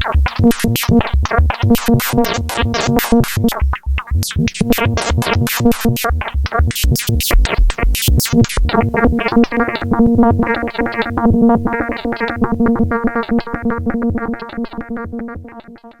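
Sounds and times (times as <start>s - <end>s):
short synth notes: 0.1s - 9.1s
kick drum thumps: 0.2s - 9.0s.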